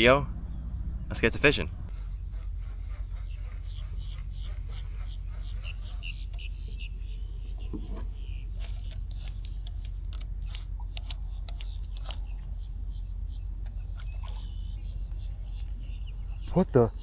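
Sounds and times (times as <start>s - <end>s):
high insect drone: 0.0s - 17.0s
low wind rumble: 0.0s - 17.0s
light clicks: 1.8s - 16.5s.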